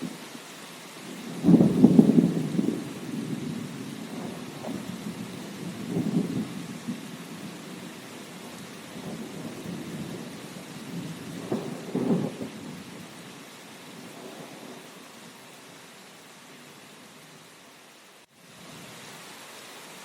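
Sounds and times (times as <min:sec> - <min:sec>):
steady rain: 0:00.0 - 0:20.0
thunder rumbles: 0:01.0 - 0:14.9.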